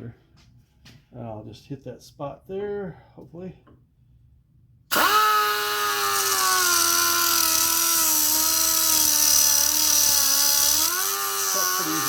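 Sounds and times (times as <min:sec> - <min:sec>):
air disc cutter whining: 0:04.9 - 0:12.0.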